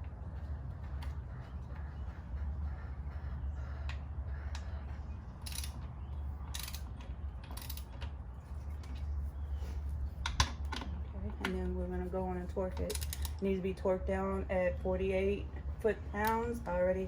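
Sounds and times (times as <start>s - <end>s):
low hum: 0.0s - 17.0s
ratchet wrench clicking: 5.4s - 5.8s, 6.5s - 6.9s, 7.5s - 7.9s, 12.9s - 13.4s.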